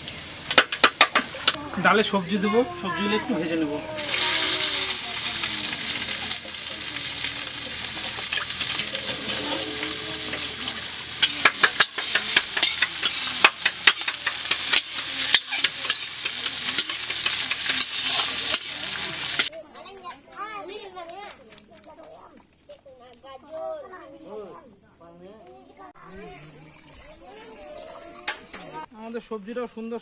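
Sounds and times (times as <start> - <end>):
vegetables sizzling in hot oil: 3.7 - 19.5, 26.1 - 28.9
spatula scraping a pan: 4.0 - 19.5, 26.2 - 28.9.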